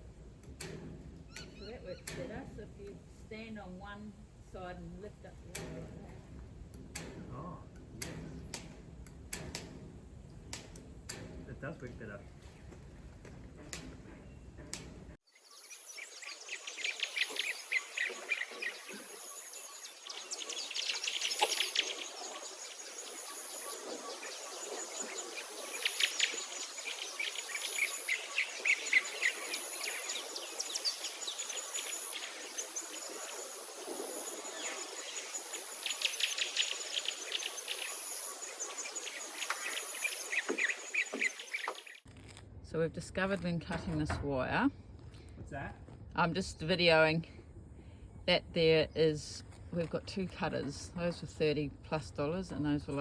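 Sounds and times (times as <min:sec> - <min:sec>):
pulsing high insect tone: 0:15.3 - 0:42.0
rapid trilling bird calls: 0:15.3 - 0:42.0.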